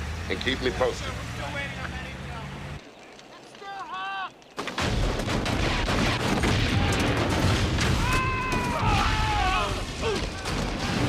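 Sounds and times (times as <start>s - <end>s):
cracking and rumbling blasts: 2.6s - 11.0s.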